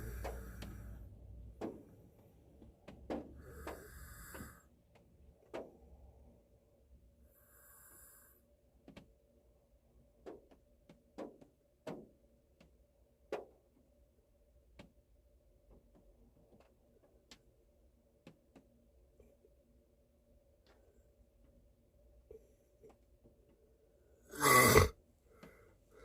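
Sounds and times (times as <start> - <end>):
man snoring softly: 0.0 - 1.0, 3.4 - 4.7, 7.3 - 8.4, 24.3 - 25.0.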